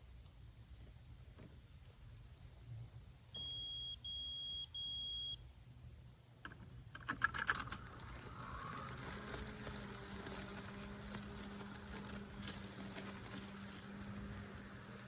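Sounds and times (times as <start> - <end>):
high-pitched beeps: 3.4 - 5.4
clicks and rustling: 6.4 - 14.8.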